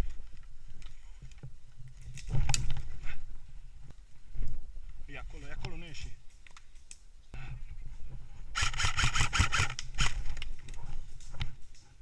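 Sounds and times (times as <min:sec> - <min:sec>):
airsoft gun rapid firing: 0:08.6 - 0:10.2.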